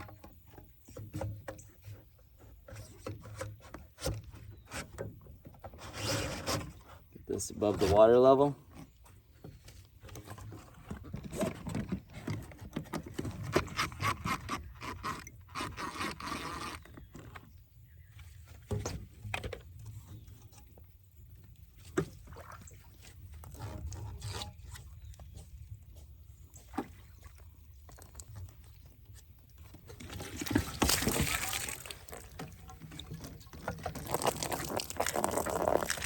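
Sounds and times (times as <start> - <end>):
hose scraping and rubbing: 5.6 - 9.0, 29.8 - 36.0.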